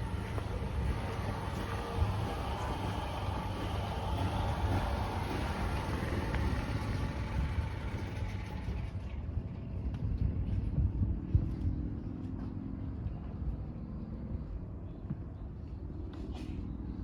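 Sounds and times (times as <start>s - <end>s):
low engine-like rumble: 0.0s - 17.0s.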